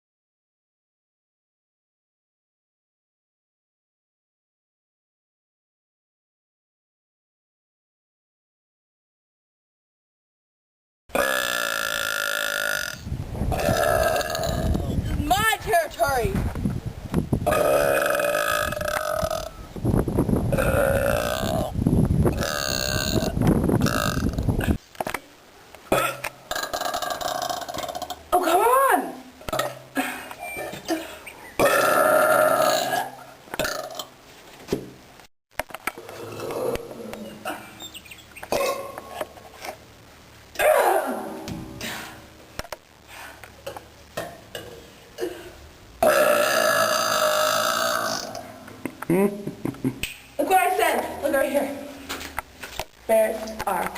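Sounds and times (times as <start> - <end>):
person belching loudly: 11.1 - 14.9, 17.4 - 19.6, 20.5 - 24.8, 25.9 - 28.3, 31.6 - 34.1, 36.0 - 37.6, 38.5 - 39.1, 43.7 - 49.4
person burping: 11.1 - 14.9, 17.5 - 19.6, 20.5 - 24.8, 25.9 - 28.2, 29.4 - 34.1, 36.0 - 37.8, 38.5 - 39.1, 43.6 - 49.9.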